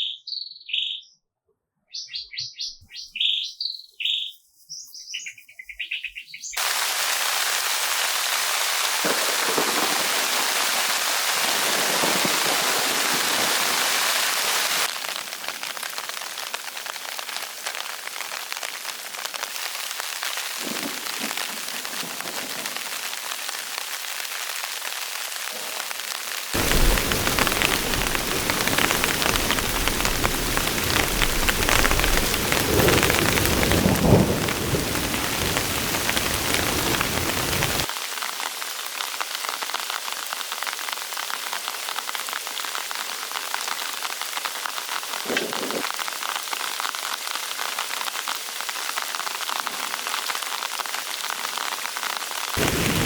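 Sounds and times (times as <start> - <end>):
heavy rain hissing: 6.6 - 53.0
deep rumble of thunder: 26.6 - 37.9, 52.6 - 53.0.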